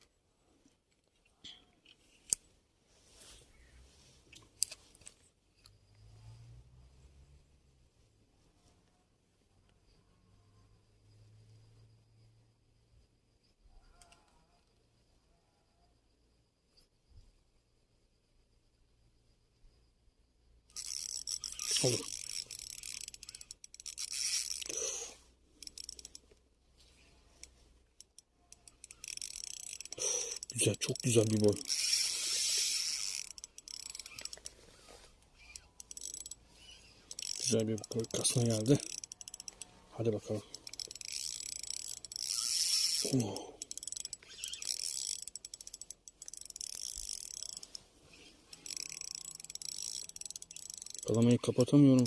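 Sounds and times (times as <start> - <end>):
fishing reel clicking: 20.7 - 34.6, 35.3 - 52.0.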